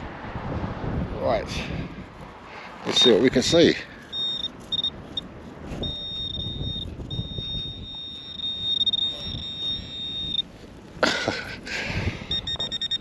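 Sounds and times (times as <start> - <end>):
wind rumbling on microphone: 0.0 - 3.8, 4.8 - 13.0
metal detector tone: 2.9 - 10.5, 12.3 - 13.0.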